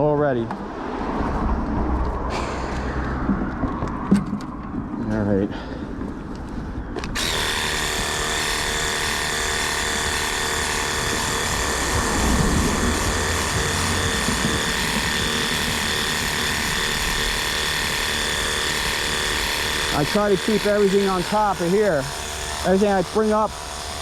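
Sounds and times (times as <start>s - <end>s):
pressure washer motor whine: 7.0s - 24.0s.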